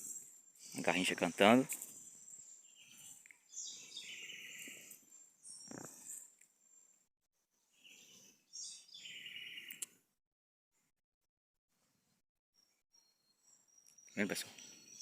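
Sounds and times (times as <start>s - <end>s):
wren singing trilled song: 2.0s - 6.2s, 7.8s - 9.8s, 12.6s - 15.0s.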